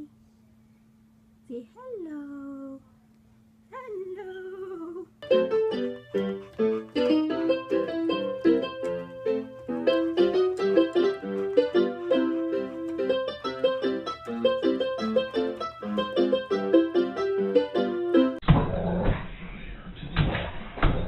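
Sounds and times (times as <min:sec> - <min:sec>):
piano melody: 0:05.2 - 0:18.4.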